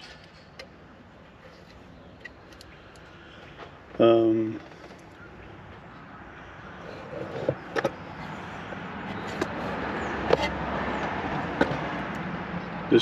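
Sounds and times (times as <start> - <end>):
passing car road noise: 0.0 - 13.0.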